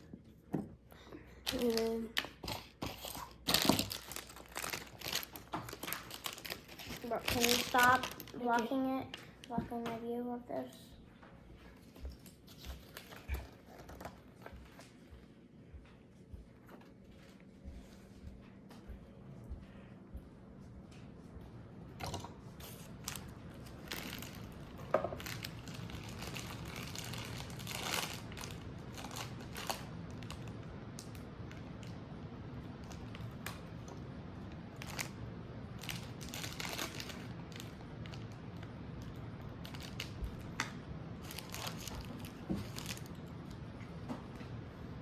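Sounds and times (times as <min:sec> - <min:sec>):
low room hum: 0:00.0 - 0:45.0
plastic packaging crinkling: 0:01.5 - 0:09.6, 0:12.4 - 0:14.2, 0:22.0 - 0:32.0, 0:34.5 - 0:43.3.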